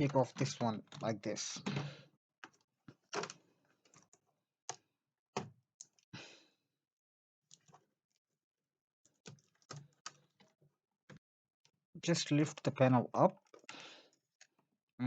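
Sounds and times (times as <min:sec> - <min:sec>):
laptop parts clicking and tapping: 0:00.0 - 0:06.0.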